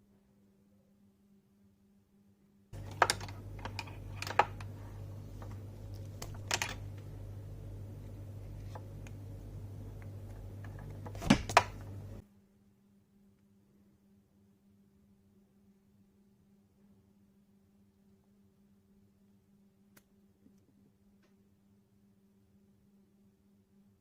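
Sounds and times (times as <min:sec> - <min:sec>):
low steady hum: 0:00.0 - 0:24.0
clicky mechanical keyboard keystrokes: 0:02.8 - 0:04.7.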